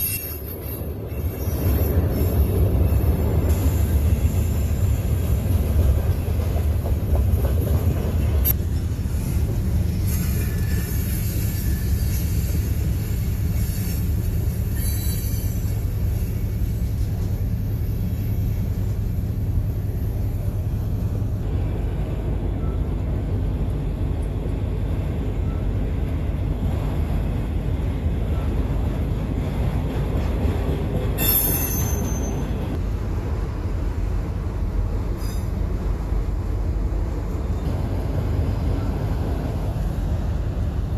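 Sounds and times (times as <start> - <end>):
train rumbling by: 0.0 - 40.9
high-pitched wheel squeal: 14.7 - 15.8, 31.2 - 32.6.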